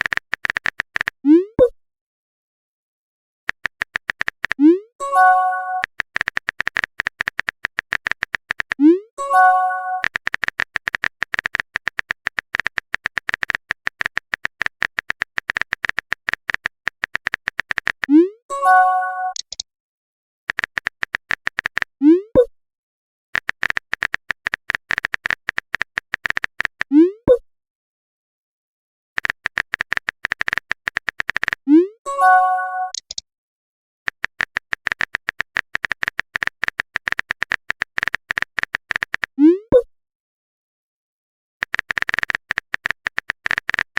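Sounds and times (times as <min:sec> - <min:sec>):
phone typing clicks: 0:00.0 - 0:01.2, 0:03.5 - 0:04.6, 0:05.8 - 0:08.8, 0:09.4 - 0:18.1, 0:20.5 - 0:21.9, 0:23.4 - 0:26.9, 0:29.2 - 0:31.6, 0:34.1 - 0:39.3, 0:41.6 - 0:43.9
phone keyboard taps: 0:03.5 - 0:04.6, 0:34.1 - 0:39.3, 0:41.6 - 0:43.9.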